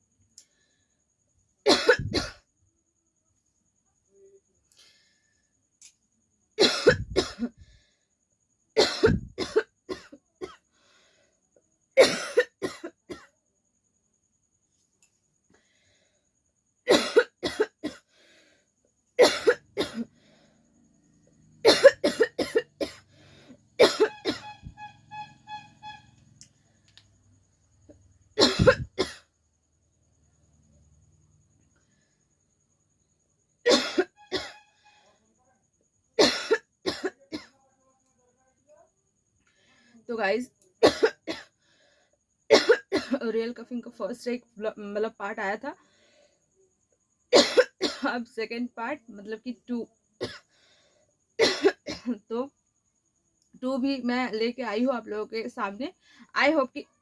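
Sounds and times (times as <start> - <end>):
woman coughing harshly: 1.7 - 2.4, 6.6 - 7.6, 8.8 - 10.6, 12.0 - 13.3, 16.9 - 18.0, 19.2 - 20.1, 21.6 - 23.0, 23.8 - 24.5, 28.4 - 29.3, 33.6 - 34.6, 36.2 - 37.5, 40.8 - 41.5, 42.5 - 43.2, 47.3 - 48.1, 50.2 - 50.4, 51.4 - 52.2.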